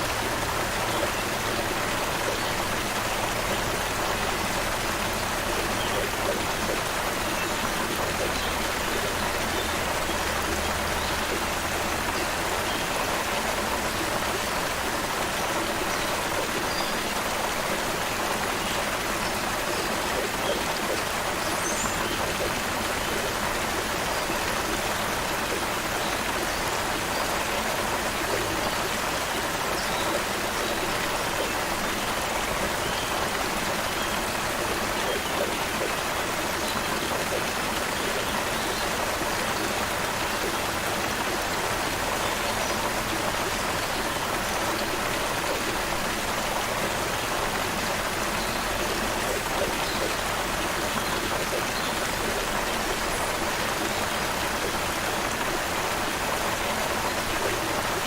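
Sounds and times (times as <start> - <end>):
creek water flowing over stones: 0.0 - 58.0.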